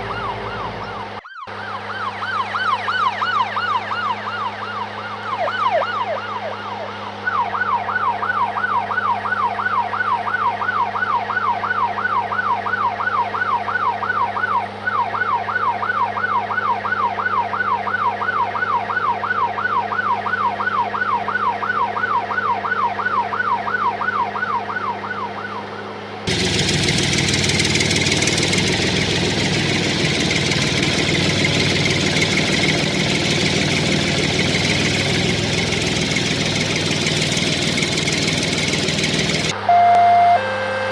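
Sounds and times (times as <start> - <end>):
toy electronic siren wailing: 0.0 - 10.5, 39.5 - 40.9
noisy engine running: 0.0 - 39.8.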